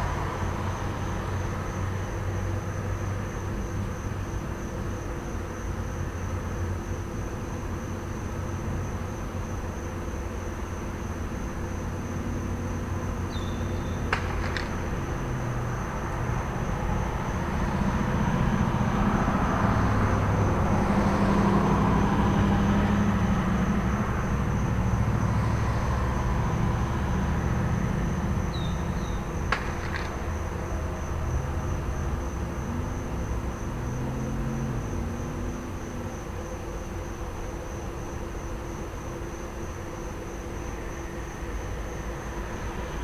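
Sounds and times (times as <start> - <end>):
passing traffic: 0.0 - 5.1, 10.3 - 43.0
crickets chirping: 0.0 - 43.0
firecrackers snapping: 14.1 - 15.3, 29.5 - 30.6.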